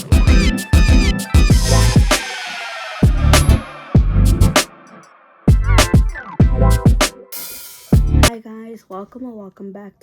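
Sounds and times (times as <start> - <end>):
electronic music with heavy bass: 0.0 - 4.9, 5.5 - 7.2, 7.9 - 8.3.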